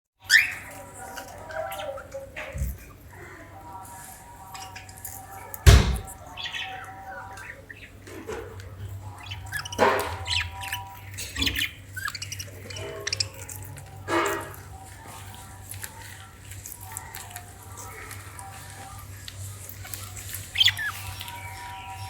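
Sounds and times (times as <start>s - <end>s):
parrot squawking and chirping: 0.2s - 2.2s, 9.2s - 14.7s, 20.0s - 22.0s
loud thump: 5.7s - 6.2s.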